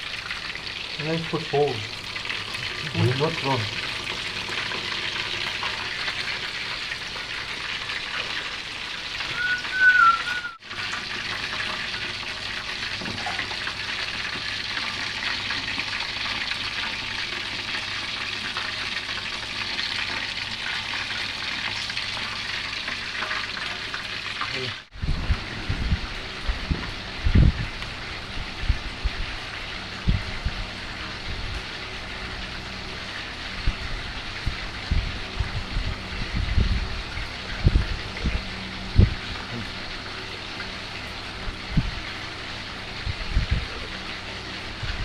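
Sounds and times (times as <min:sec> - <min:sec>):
food sizzling in hot oil: 0:00.0 - 0:38.2
short high whistle: 0:09.3 - 0:10.6
wind rumble on microphone: 0:24.9 - 0:31.6, 0:33.6 - 0:39.3, 0:41.7 - 0:42.0, 0:43.0 - 0:43.8, 0:44.8 - 0:45.0.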